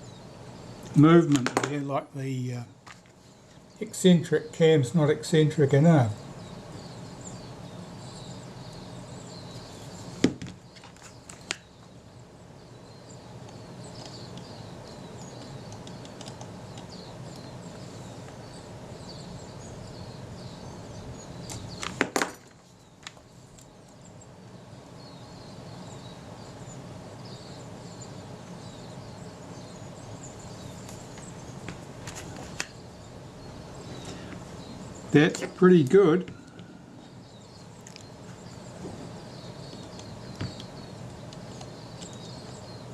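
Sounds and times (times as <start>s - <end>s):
steady low background noise: 0.0s - 42.9s
faint high chirping: 22.7s - 42.9s.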